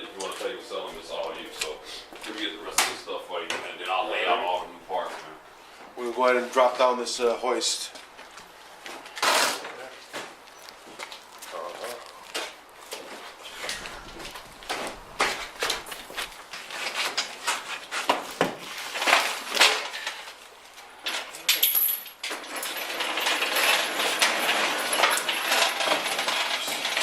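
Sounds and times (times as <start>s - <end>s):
steady hiss: 12.6s - 18.9s
metal clinking and knocking: 21.1s - 27.0s.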